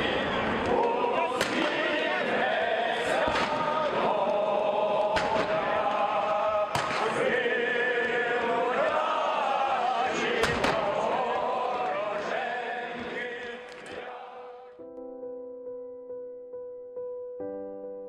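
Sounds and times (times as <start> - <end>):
sharp bangs: 0.0 - 2.0, 3.1 - 4.4, 5.0 - 8.2
group singing long notes: 0.0 - 14.8.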